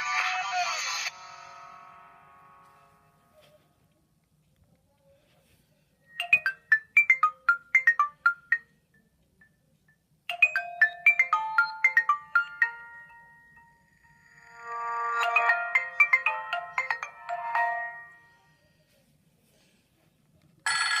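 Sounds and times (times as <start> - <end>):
phone ringtone notes: 6.1 - 8.7, 10.3 - 18.6.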